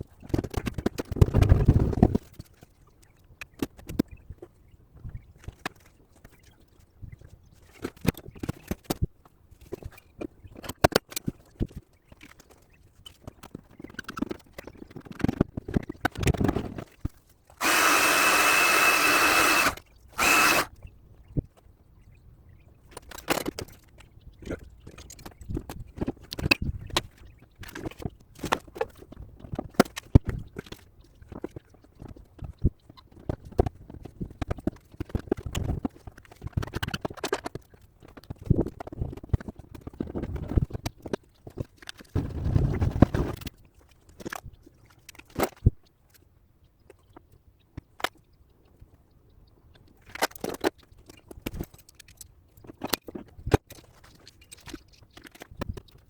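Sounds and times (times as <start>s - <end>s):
hand tools clicking on metal: 17.6s - 20.7s.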